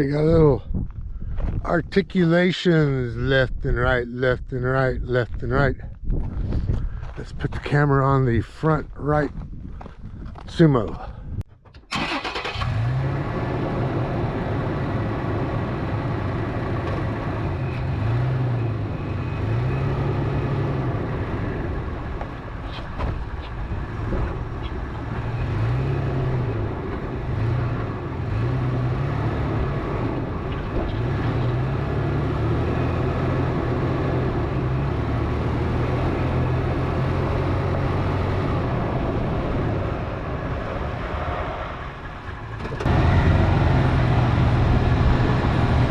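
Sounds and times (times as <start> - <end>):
tyre and suspension noise: 8.9 - 12.8, 15.5 - 45.9
engine revving: 11.9 - 22.4, 23.8 - 45.9.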